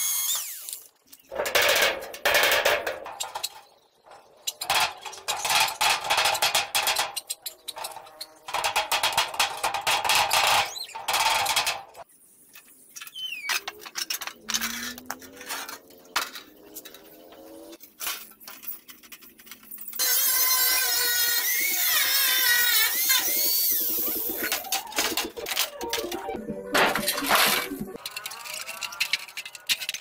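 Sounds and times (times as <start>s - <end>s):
high-pitched squealing: 20.0s - 29.9s.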